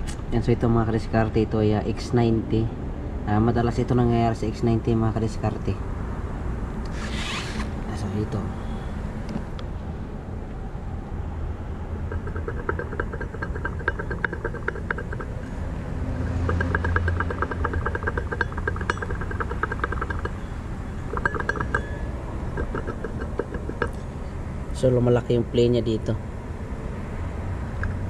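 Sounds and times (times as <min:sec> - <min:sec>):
engine humming: 0:00.0 - 0:28.0
fast metallic rattle: 0:12.1 - 0:15.6, 0:16.2 - 0:24.1.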